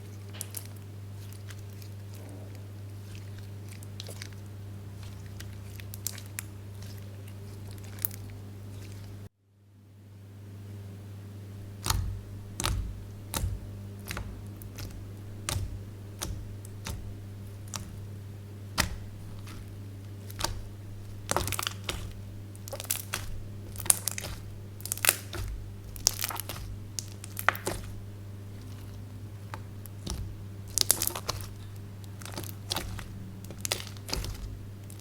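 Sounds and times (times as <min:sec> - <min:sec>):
steady low hum: 0:00.0 - 0:35.0
slime squeezed by hand crackling: 0:18.8 - 0:35.0.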